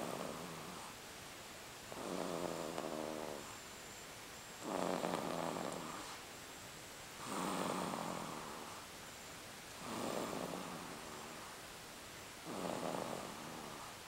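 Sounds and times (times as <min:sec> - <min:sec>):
snoring: 0:00.0 - 0:01.0, 0:01.9 - 0:03.6, 0:04.6 - 0:06.2, 0:07.2 - 0:08.8, 0:09.8 - 0:11.6, 0:12.4 - 0:14.0.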